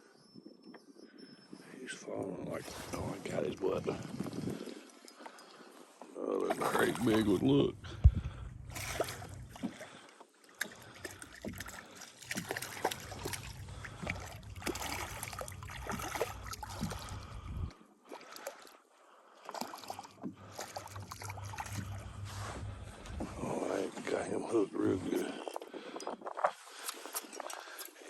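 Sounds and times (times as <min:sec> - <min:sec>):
boat motor low hum: 0:06.3 - 0:17.8, 0:19.6 - 0:25.0.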